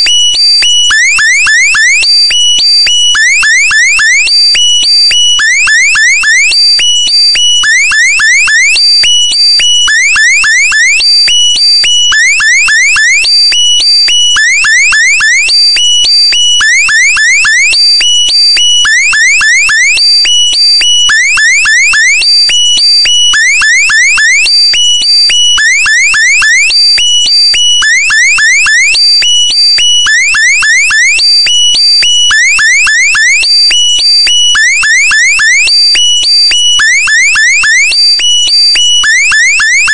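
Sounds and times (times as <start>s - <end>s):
electronic alarm sweeps: 0.0s - 39.9s.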